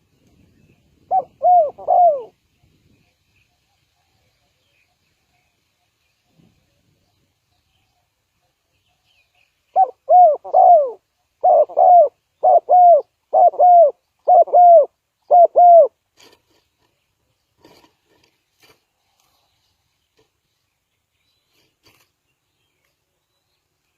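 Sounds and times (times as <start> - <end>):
dove cooing: 1.0 - 2.4, 9.7 - 16.3.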